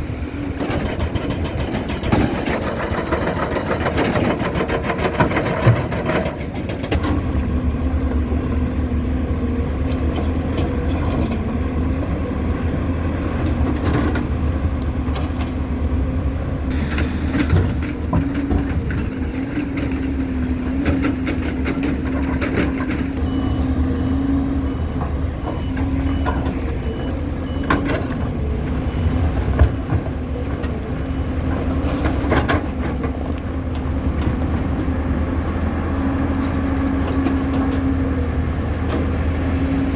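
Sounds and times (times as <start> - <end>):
diesel construction machinery running: 0.0 - 39.9
faint reversing beep: 23.2 - 29.5.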